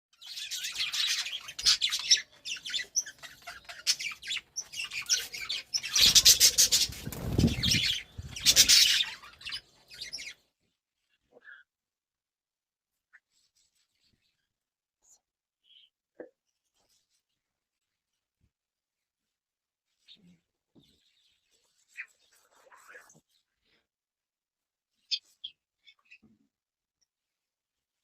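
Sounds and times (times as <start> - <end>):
budgerigars chattering and warbling: 0.2 - 10.4
wing flutter: 5.8 - 9.3.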